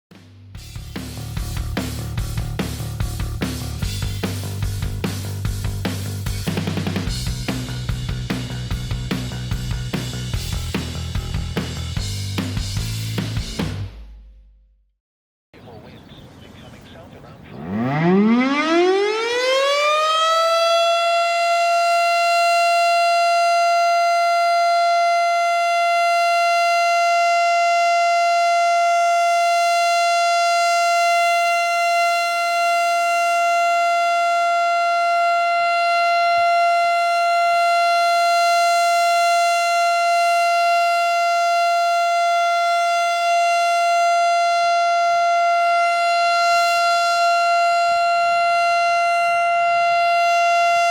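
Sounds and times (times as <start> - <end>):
outdoor warning siren: 6.4 - 11.8, 17.5 - 50.9.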